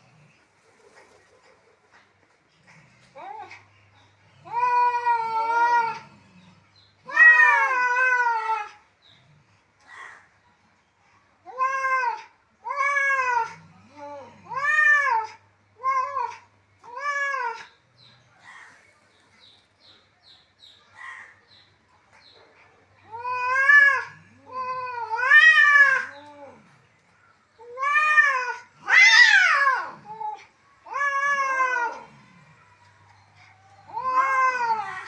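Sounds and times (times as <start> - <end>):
cats meowing in a fight: 4.4 - 6.4, 7.0 - 8.8, 11.5 - 17.7, 23.0 - 26.7, 27.6 - 32.9, 33.9 - 35.0.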